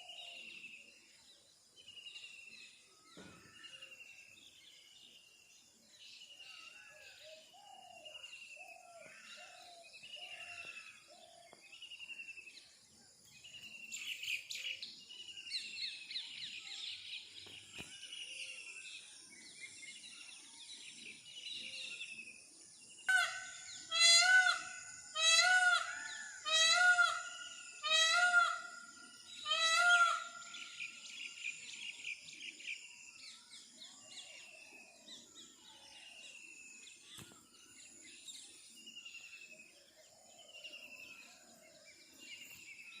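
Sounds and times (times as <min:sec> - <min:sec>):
bird repeated loud calls: 0:23.1 - 0:30.8.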